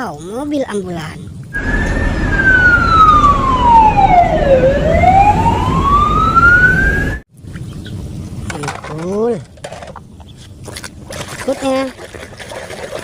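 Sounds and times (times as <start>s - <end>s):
low rumble: 1.4s - 7.2s
ambulance siren wailing: 1.6s - 7.2s.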